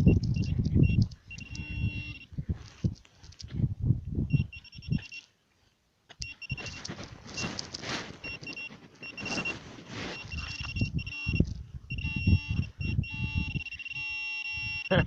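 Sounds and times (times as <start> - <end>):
metal detector high beeps: 0.0 - 2.4, 4.3 - 5.3, 6.2 - 7.6, 8.2 - 15.0
soil being dug: 6.1 - 11.6.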